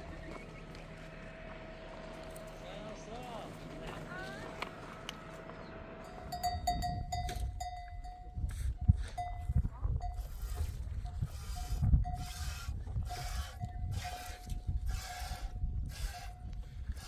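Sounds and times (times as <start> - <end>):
livestock bell ringing: 6.0 - 10.4
low rustling wind noise: 6.1 - 17.0.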